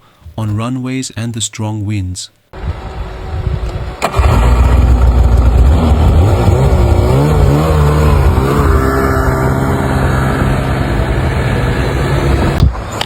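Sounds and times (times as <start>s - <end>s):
engine running loudly: 2.7s - 12.7s.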